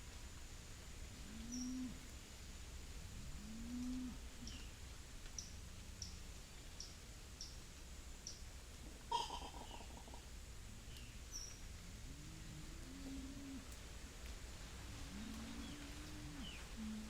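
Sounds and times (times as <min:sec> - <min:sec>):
low rising and falling bird calls: 0:09.1 - 0:10.2, 0:15.1 - 0:17.0.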